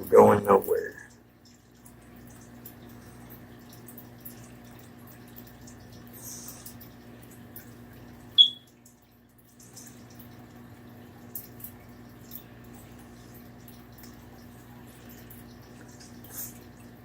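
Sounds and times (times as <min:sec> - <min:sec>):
sharp high-pitched chirp: 0:08.4 - 0:08.7.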